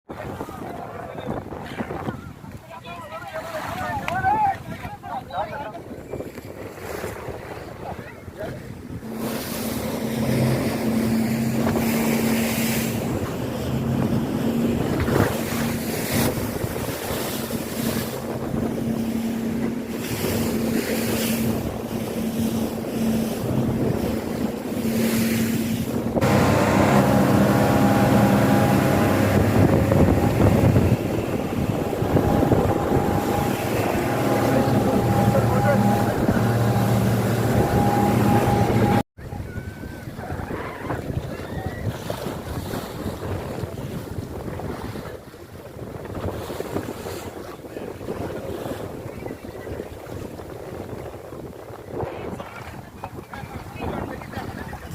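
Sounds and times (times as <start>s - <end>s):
rushing water: 0.1s - 54.9s
wind buffeting microphone: 0.1s - 54.9s
boat engine humming: 7.2s - 41.1s.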